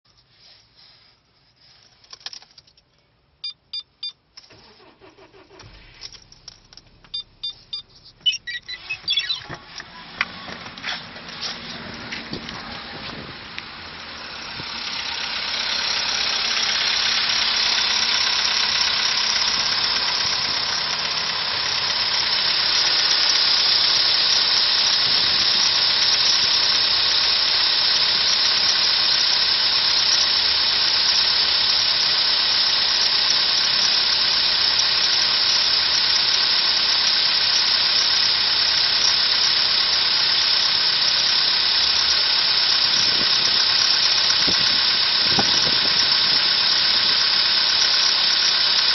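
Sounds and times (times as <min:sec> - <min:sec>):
car engine running: 0:04.5 - 0:48.9.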